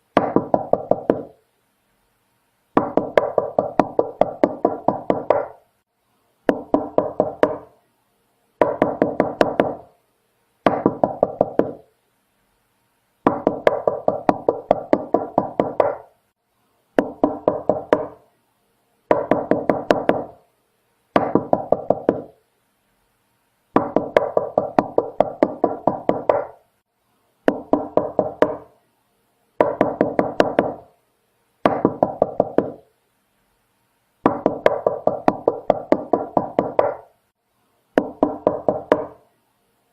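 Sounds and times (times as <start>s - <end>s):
knocking on a door: 0.2s - 1.3s, 2.8s - 5.6s, 6.5s - 7.7s, 8.6s - 9.9s, 10.7s - 11.8s, 13.3s - 16.0s, 17.0s - 18.2s, 19.1s - 20.4s, 21.2s - 22.3s, 23.8s - 26.6s, 27.5s - 28.7s, 29.6s - 30.8s, 31.6s - 32.8s, 34.2s - 37.0s, 38.0s - 39.2s.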